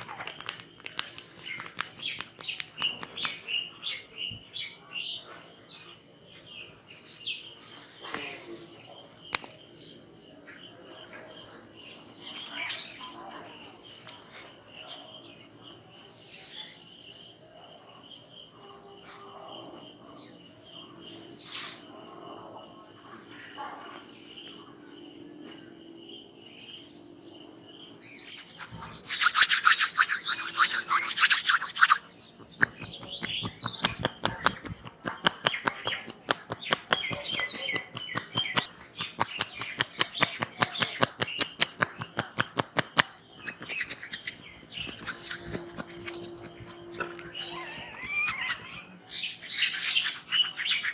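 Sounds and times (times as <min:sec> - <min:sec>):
hands rubbing head: 0:00.0 - 0:03.2, 0:28.3 - 0:50.9
faint birdsong: 0:00.0 - 0:50.9
quick tapping strokes: 0:28.2 - 0:50.9.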